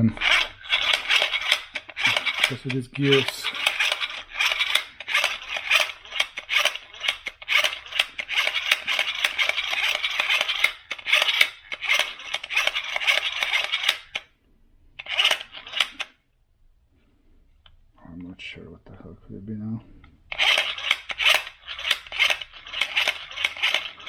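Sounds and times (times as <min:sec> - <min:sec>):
small hard parts clicking: 0:00.0 - 0:14.3, 0:15.0 - 0:16.2, 0:20.3 - 0:24.0.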